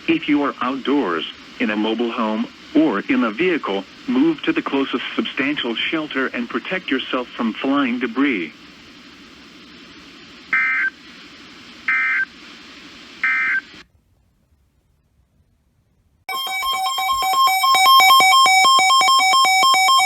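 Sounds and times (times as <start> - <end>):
radio hiss and hum: 0.0 - 13.9
rapid pulsing alarm beeps: 10.5 - 11.0, 11.9 - 12.3, 13.2 - 13.7, 16.3 - 20.0.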